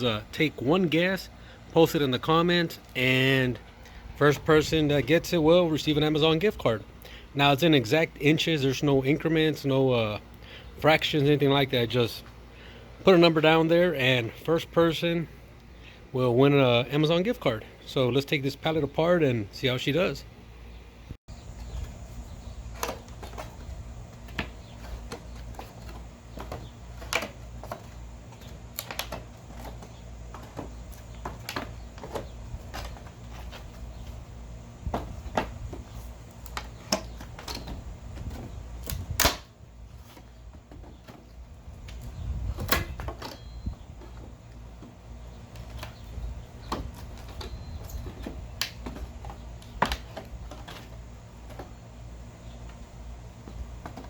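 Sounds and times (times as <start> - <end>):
wooden pallet boards cracking: 38.8 - 39.5.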